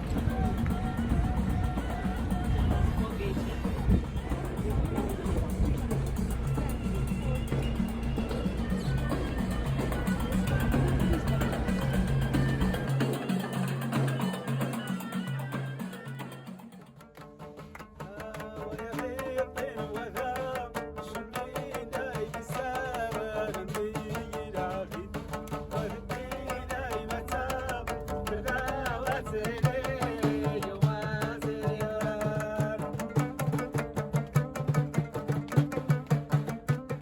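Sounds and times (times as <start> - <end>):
wavering melody: 0.0 - 16.8
quick rhythmic strokes: 0.0 - 37.0.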